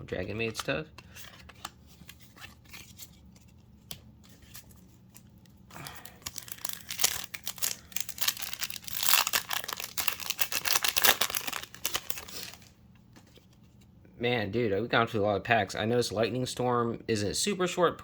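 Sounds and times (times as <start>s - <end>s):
foil wrapper tearing and crinkling: 5.8s - 12.7s.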